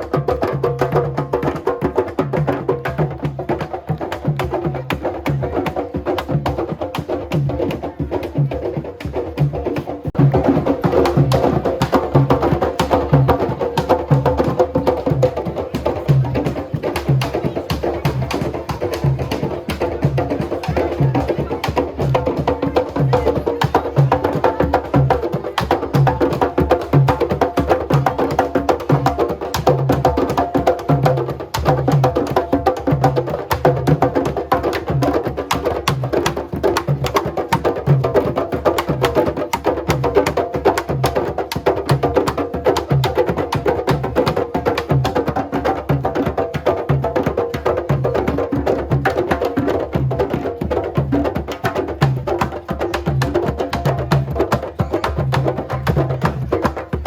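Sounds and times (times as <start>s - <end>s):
clicking hand percussion: 0.0s - 57.0s.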